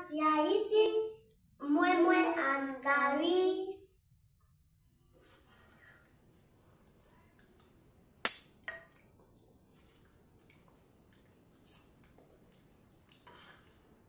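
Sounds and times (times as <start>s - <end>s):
spoon clinking against a dish: 8.2s - 8.9s.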